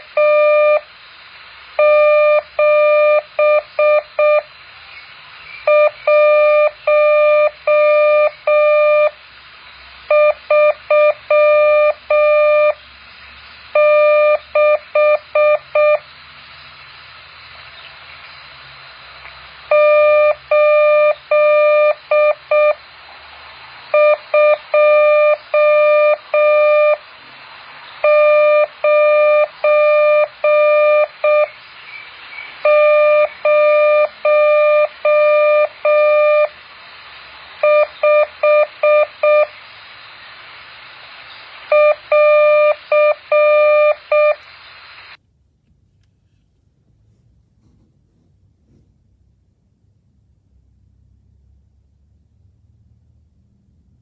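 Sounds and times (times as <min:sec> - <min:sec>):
morse code beeps: 0:00.2 - 0:00.9, 0:01.8 - 0:04.5, 0:05.6 - 0:09.2, 0:10.1 - 0:12.8, 0:13.7 - 0:16.1, 0:19.7 - 0:22.8, 0:23.9 - 0:27.0, 0:28.0 - 0:31.6, 0:32.6 - 0:36.6, 0:37.6 - 0:39.6, 0:41.7 - 0:45.2.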